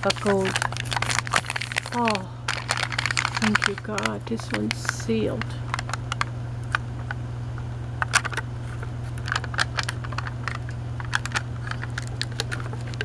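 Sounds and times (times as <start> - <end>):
steady low hum: 0.0 - 13.0
jar lid clicking and crackling: 8.0 - 13.0.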